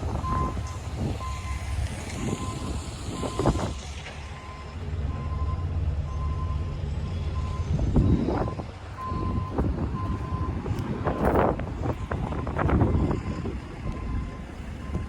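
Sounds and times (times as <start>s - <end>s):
diesel engine running: 0.0s - 15.0s
backup alarm beeping: 7.4s - 10.7s, 12.3s - 15.0s.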